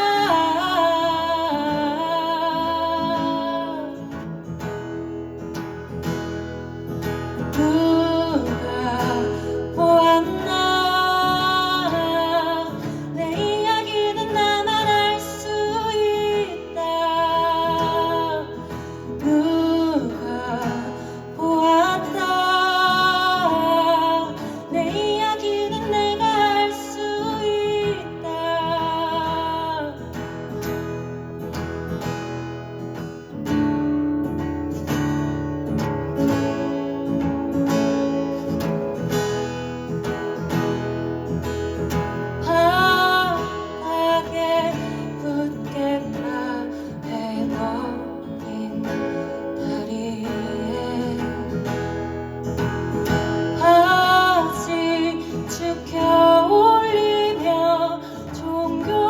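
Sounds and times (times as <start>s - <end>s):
person singing with vibrato: 0.0s - 4.3s, 7.5s - 30.6s, 41.9s - 51.9s, 53.0s - 59.0s
acoustic guitar strumming: 0.0s - 59.0s.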